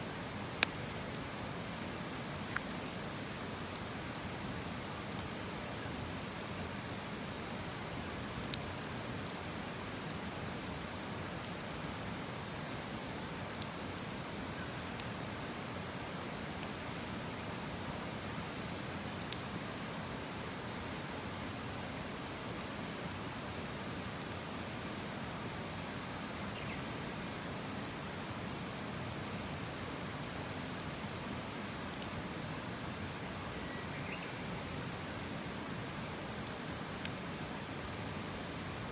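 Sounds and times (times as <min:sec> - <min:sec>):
campfire hissing: 0:00.0 - 0:38.9
fire pops and cracks: 0:00.5 - 0:01.3, 0:02.2 - 0:15.6, 0:19.1 - 0:20.6, 0:35.6 - 0:38.3.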